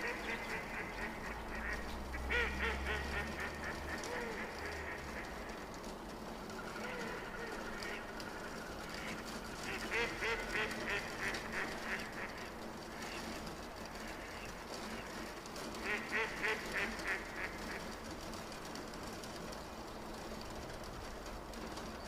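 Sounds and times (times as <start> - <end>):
ducks quacking: 0.0 - 5.6, 9.0 - 13.3, 15.8 - 18.0
steady background noise: 0.0 - 22.0.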